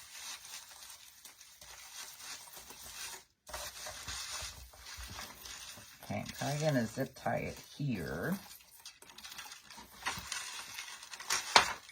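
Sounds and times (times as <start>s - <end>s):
artificial branches rustling: 0.0s - 11.9s.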